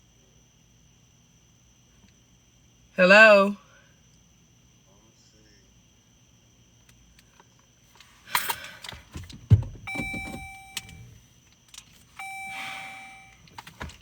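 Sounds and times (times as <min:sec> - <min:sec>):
keys jangling: 0:09.9 - 0:11.1
car electronic chimes: 0:09.9 - 0:11.2, 0:12.2 - 0:13.5.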